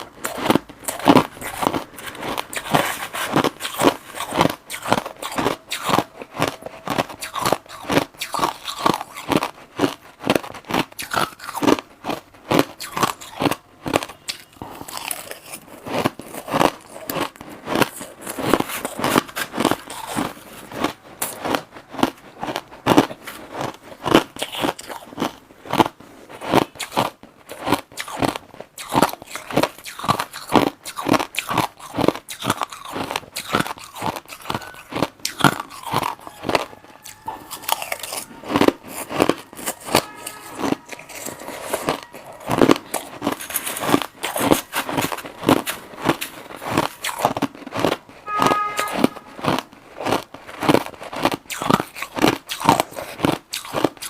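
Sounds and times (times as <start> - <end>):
crushed ice crunching: 0.0 - 54.0.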